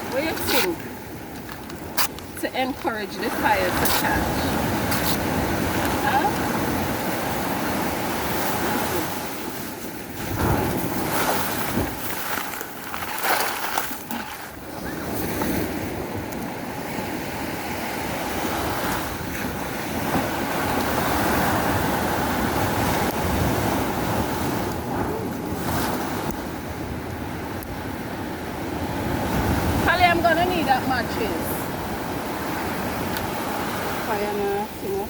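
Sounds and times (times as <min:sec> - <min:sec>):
wind buffeting microphone: 0:00.0 - 0:12.4, 0:14.4 - 0:35.0
surf washing on shore: 0:00.0 - 0:35.0.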